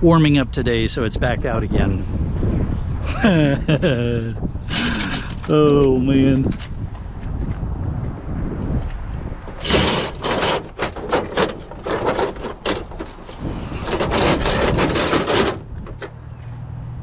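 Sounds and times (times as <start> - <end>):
scrap metal scraping and rattling: 4.6 - 6.8, 9.4 - 16.4
metal knocks and clanks: 8.8 - 16.4.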